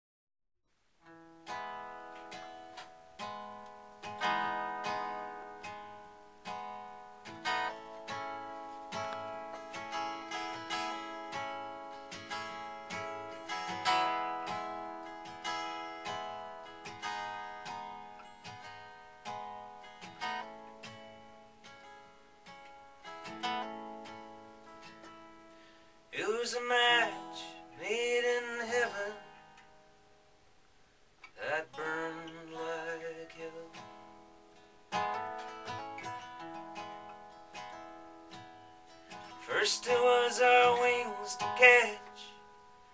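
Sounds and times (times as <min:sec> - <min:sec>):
acoustic guitar strumming: 0:01.0 - 0:30.4, 0:31.2 - 0:42.9.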